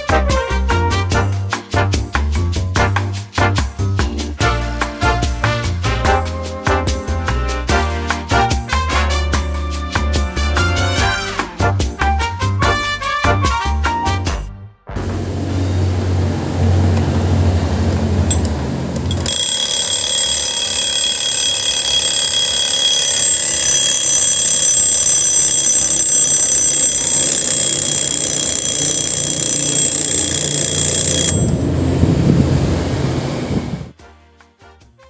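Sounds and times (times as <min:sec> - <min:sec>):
alarm clock ringing: 0:19.1 - 0:32.0.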